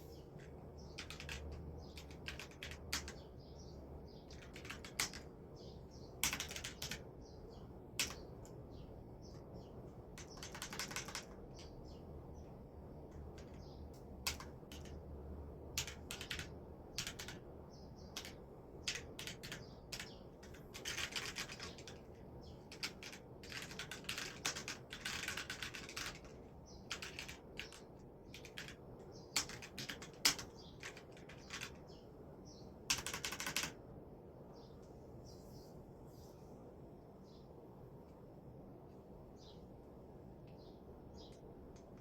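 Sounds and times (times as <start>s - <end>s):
mechanical keyboard typing: 0.4s - 3.3s, 4.1s - 5.4s, 6.1s - 12.5s, 13.1s - 32.0s, 32.8s - 33.8s.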